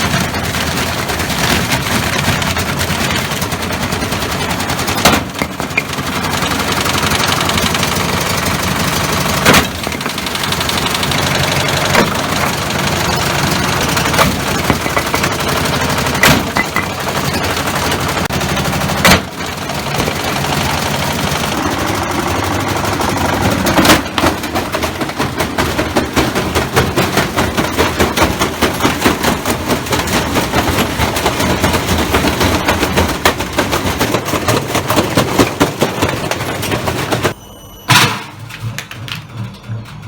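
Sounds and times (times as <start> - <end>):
washing machine spinning: 0.0 - 40.0.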